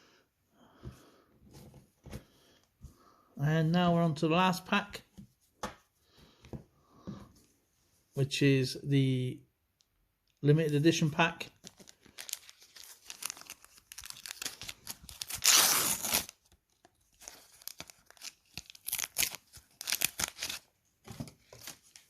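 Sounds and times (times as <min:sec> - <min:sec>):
wrapper crinkling: 0:11.6 - 0:16.4
wrapper tearing: 0:11.6 - 0:16.4, 0:17.2 - 0:20.7.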